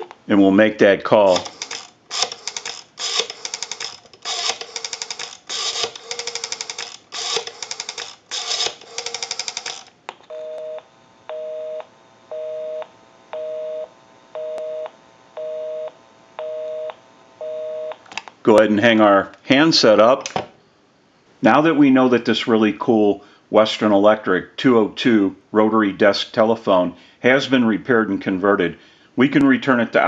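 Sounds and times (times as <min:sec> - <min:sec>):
rotary dial clicks: 0:01.3 - 0:10.0
busy signal beeps: 0:10.3 - 0:12.8.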